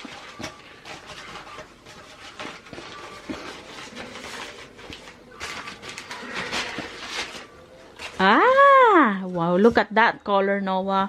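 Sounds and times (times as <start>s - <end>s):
packaging rustling and crinkling: 0.0s - 9.4s.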